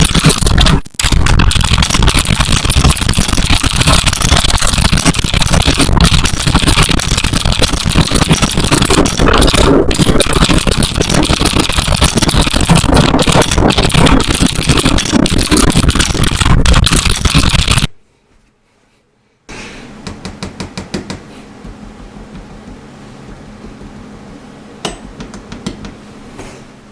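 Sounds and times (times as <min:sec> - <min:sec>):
fast typing on keyboard: 0:00.0 - 0:17.9.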